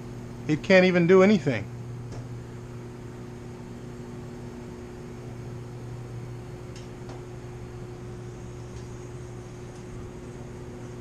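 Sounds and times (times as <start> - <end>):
washing machine motor humming: 0.0 - 11.0.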